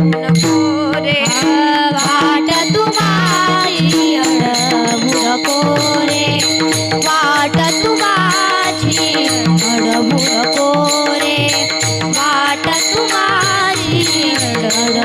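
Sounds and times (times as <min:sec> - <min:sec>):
harmonium drone: 0:00.0 - 0:15.0
woman singing devotional melody: 0:00.0 - 0:15.0
small hand cymbals: 0:00.4 - 0:15.0.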